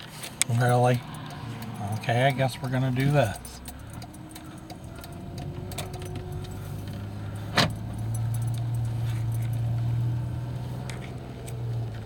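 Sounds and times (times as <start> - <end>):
dog collar tags jingling: 7.8 - 9.7.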